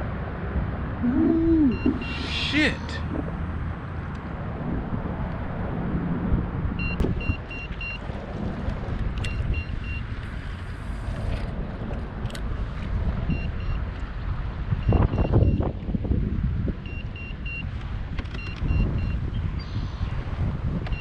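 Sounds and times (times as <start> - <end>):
wind buffeting microphone: 0.0 - 2.3, 3.0 - 21.0
short high electronic beeps: 1.7 - 2.9.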